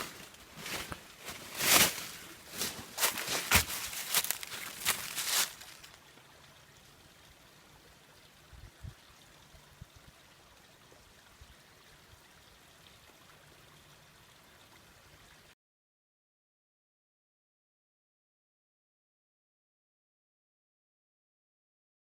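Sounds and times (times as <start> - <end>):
loud footsteps: 0.0 - 5.9
faint stream trickling: 0.0 - 15.6.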